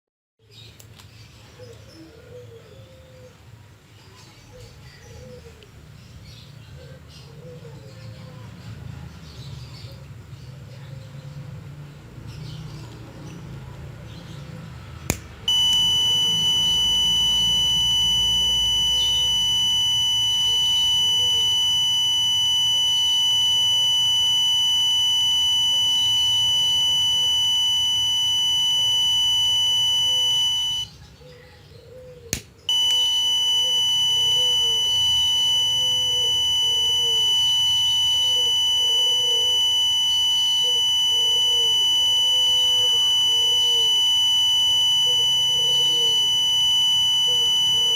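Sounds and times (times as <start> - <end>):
sharp click: 15.1 - 15.4, 32.3 - 32.6
high-pitched alarm buzzer: 15.5 - 30.9, 32.7 - 47.9.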